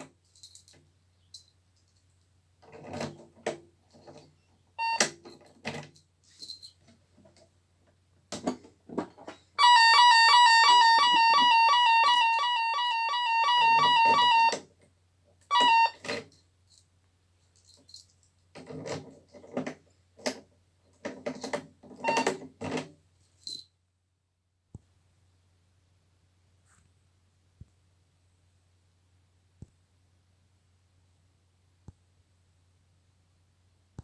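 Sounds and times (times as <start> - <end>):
electronic buzzer beeping: 9.6 - 14.6, 15.5 - 16.0.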